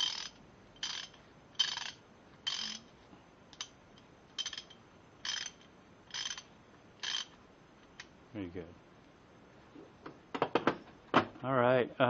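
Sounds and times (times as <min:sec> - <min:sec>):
socket ratchet clicking: 0:00.0 - 0:02.9, 0:03.5 - 0:07.4.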